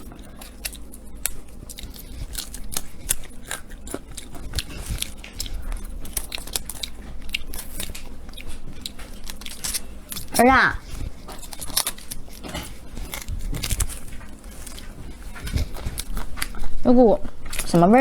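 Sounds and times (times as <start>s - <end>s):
artichoke leaves crackling: 0.0s - 18.0s.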